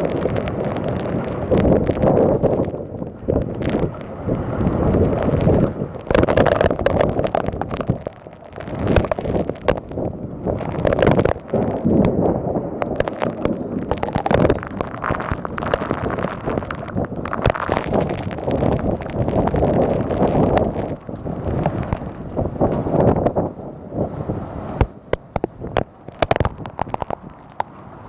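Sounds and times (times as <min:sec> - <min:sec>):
sharp taps and crackles: 0:00.0 - 0:23.5, 0:24.7 - 0:27.8
wind gusting across microphone: 0:00.0 - 0:28.0.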